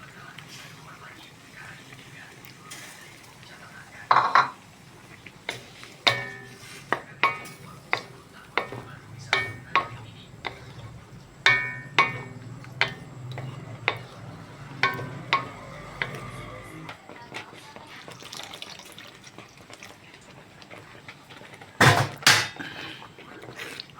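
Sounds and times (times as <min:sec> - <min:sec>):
metal utensil scraping metal pot: 0:05.4 - 0:17.0.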